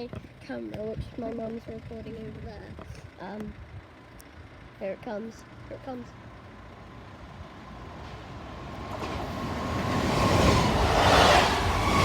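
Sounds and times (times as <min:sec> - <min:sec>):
passenger train passing: 0:06.7 - 0:12.0.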